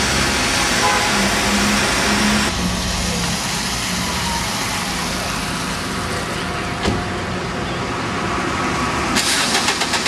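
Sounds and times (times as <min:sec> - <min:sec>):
street traffic noise: 0:00.0 - 0:10.0
vehicle engine humming: 0:00.0 - 0:10.0
hiss: 0:09.2 - 0:10.0.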